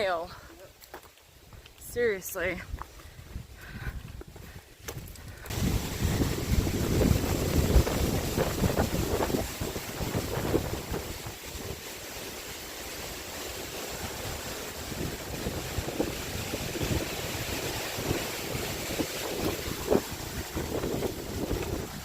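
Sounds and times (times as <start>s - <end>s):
wind buffeting microphone: 2.6s - 11.9s, 13.9s - 22.0s.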